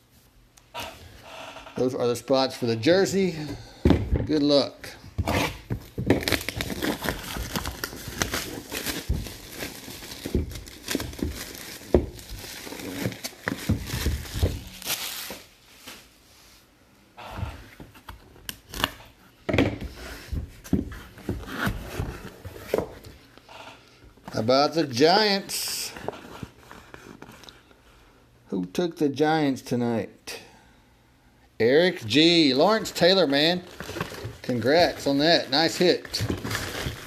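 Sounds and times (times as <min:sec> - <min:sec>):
wrapping being torn and crumpled: 0:05.3 - 0:15.5, 0:32.6 - 0:37.0.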